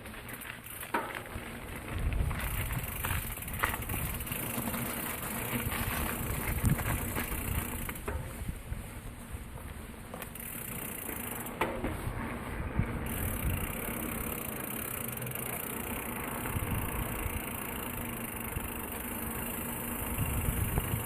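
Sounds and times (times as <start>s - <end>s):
bike tyres rolling with hiss: 0.0s - 21.0s
wind rumbling on microphone: 1.6s - 10.2s, 11.8s - 13.9s, 16.4s - 18.9s, 19.6s - 21.0s.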